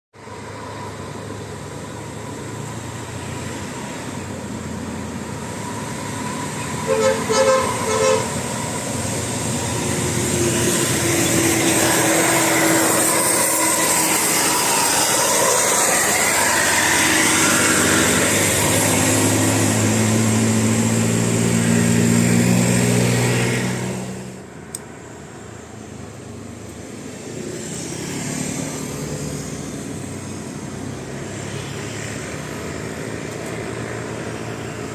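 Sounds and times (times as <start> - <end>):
bus engine and road noise: 0.1 - 34.9
shifting horn tones: 6.6 - 8.6
musical air horn toot: 6.8 - 8.4.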